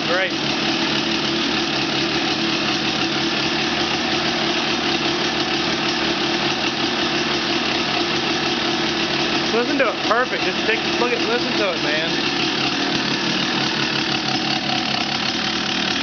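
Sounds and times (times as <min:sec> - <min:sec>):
two-stroke engine idling: 0:00.0 - 0:16.0.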